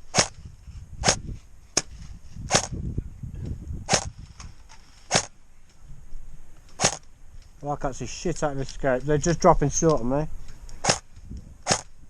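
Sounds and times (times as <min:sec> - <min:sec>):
airsoft rifle shots: 0:00.1 - 0:00.4, 0:02.5 - 0:02.8, 0:03.9 - 0:04.2, 0:05.1 - 0:05.4, 0:06.8 - 0:07.1, 0:10.8 - 0:12.0.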